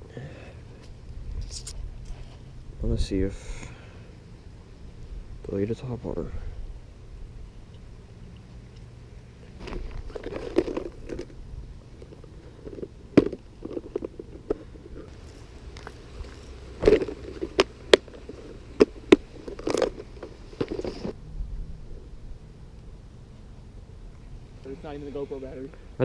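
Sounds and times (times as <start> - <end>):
handling clicks and scraping: 8.4 - 21.2.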